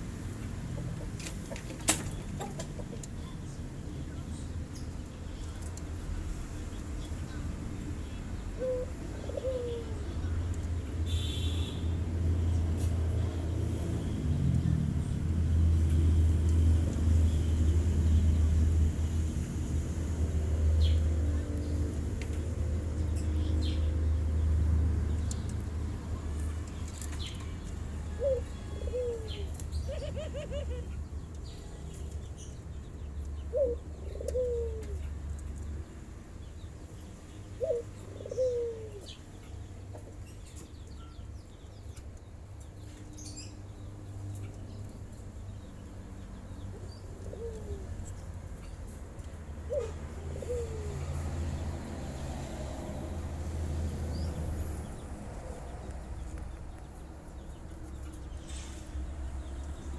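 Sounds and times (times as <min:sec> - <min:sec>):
doves cooing: 0:08.6 - 0:10.4, 0:28.0 - 0:31.1, 0:33.5 - 0:35.1, 0:37.6 - 0:39.2, 0:46.7 - 0:48.1, 0:49.6 - 0:51.5.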